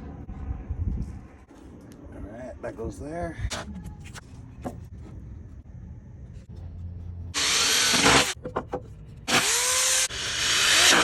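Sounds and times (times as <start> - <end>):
power drill driving screws: 7.4 - 8.4, 9.3 - 11.0.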